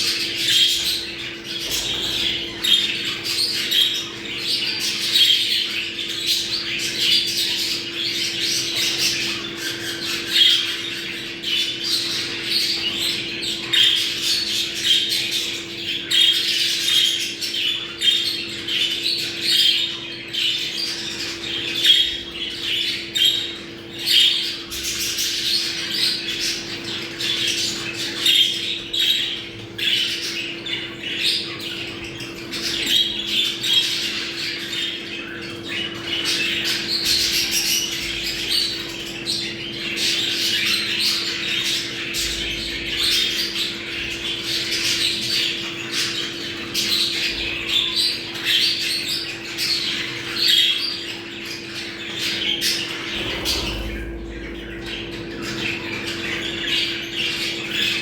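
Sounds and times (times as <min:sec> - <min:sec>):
budgerigars chattering and warbling: 0:00.0 - 0:58.0
steady low hum: 0:52.0 - 0:58.0.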